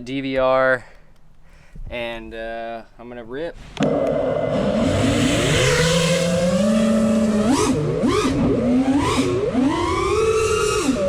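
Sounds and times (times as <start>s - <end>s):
drone motors whining: 3.7s - 11.0s.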